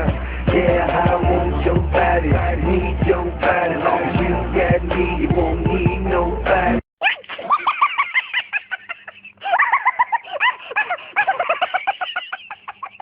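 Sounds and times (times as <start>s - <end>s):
music: 0.0s - 6.8s.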